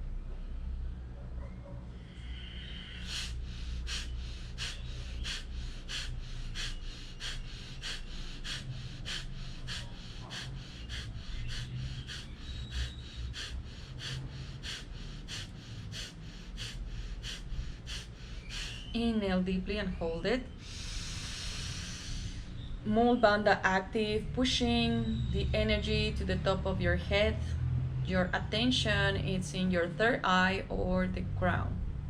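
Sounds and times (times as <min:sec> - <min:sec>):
forceful nasal exhalations: 0:02.2 - 0:18.9, 0:20.6 - 0:22.6.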